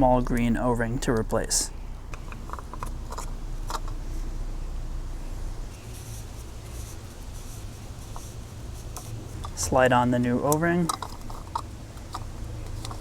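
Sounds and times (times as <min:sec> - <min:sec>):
steady low hum: 0:00.0 - 0:13.0
rubbing and scratching of rubber: 0:05.7 - 0:09.8.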